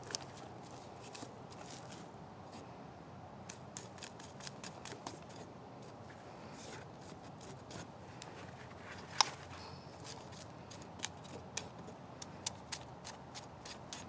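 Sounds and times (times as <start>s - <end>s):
scissors snipping: 3.5s - 5.4s, 10.0s - 14.0s.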